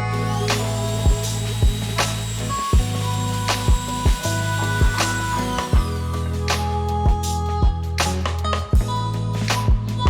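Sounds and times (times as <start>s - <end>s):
bass line: 0.0s - 10.0s
kick drum: 1.0s - 1.8s, 7.1s - 8.0s, 8.8s - 9.1s.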